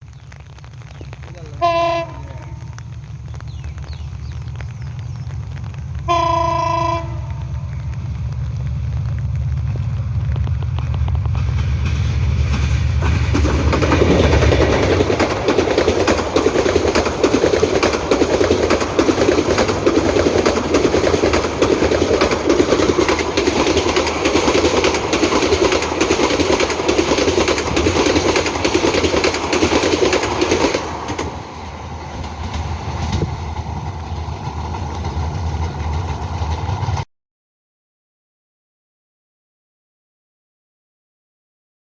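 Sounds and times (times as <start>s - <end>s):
locomotive engine rumble: 0.0s - 37.0s
train wheels clattering: 0.8s - 37.0s
train horn blast: 1.4s - 2.8s, 6.0s - 7.8s.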